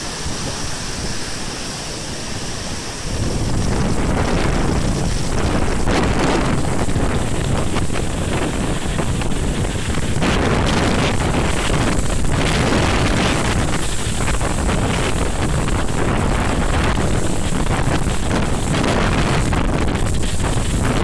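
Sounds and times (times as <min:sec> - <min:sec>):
strong wind on microphone: 0:00.0 - 0:21.0.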